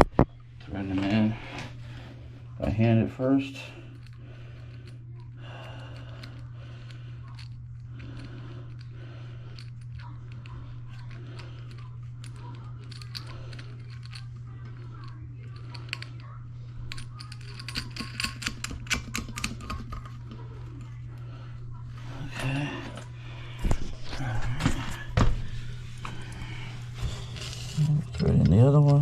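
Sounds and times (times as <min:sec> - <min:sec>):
steady low hum: 0:00.0 - 0:29.0
small metal clicks and clinks: 0:09.5 - 0:20.1.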